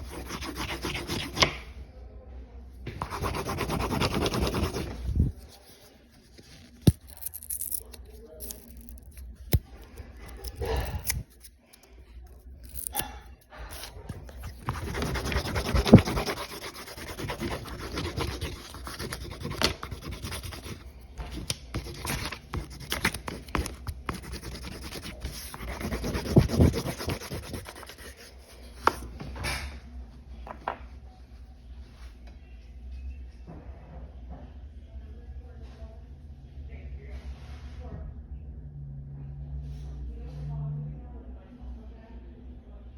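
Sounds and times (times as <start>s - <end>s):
coloring tool scratching on sign: 0.0s - 1.6s, 2.9s - 5.8s, 13.7s - 29.0s.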